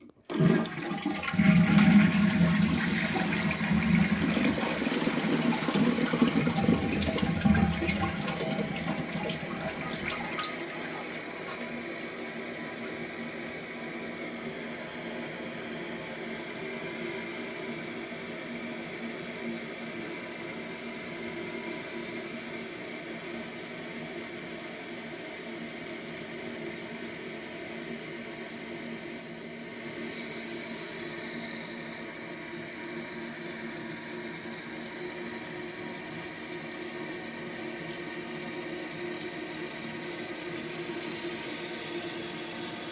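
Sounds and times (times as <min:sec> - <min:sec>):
water running into toilet tank: 0:00.0 - 0:13.6, 0:34.0 - 0:42.9.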